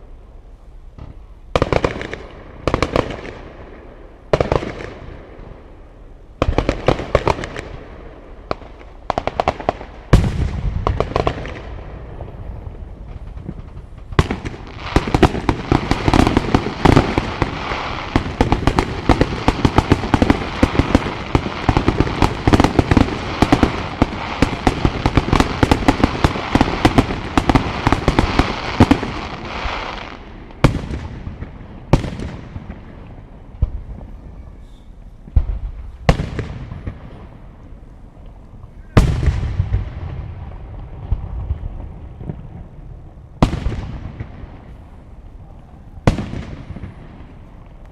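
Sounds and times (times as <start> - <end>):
fireworks crackling: 0.0 - 47.9
fireworks bangs and booms: 0.9 - 47.9.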